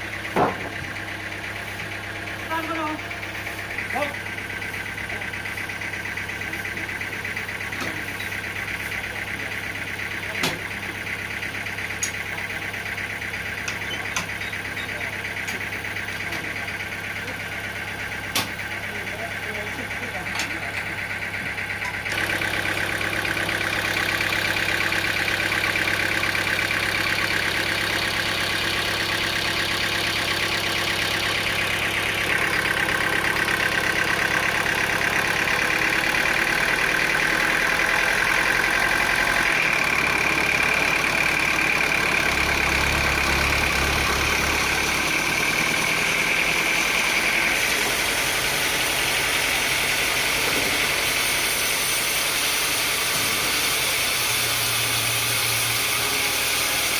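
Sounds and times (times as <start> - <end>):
motor hum: 0.0 - 56.8
high machinery whine: 18.1 - 56.9.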